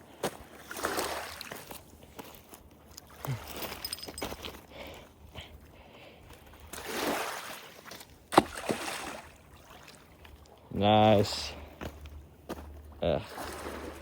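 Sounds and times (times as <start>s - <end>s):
shallow water splashing at shore: 0.2s - 1.8s, 6.7s - 10.6s, 13.2s - 14.0s.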